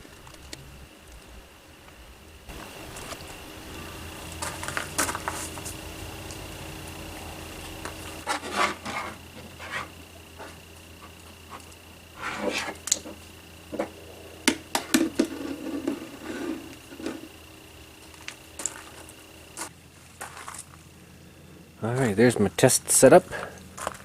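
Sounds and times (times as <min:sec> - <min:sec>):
faint steady hum: 0:00.0 - 0:24.0
hard objects knocking and scraping: 0:13.7 - 0:17.2.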